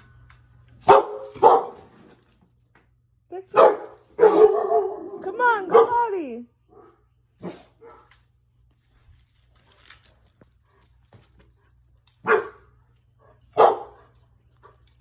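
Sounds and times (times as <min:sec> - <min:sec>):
dog barking: 0:00.8 - 0:01.9, 0:03.5 - 0:06.1, 0:06.7 - 0:08.1, 0:12.2 - 0:12.7, 0:13.5 - 0:14.1.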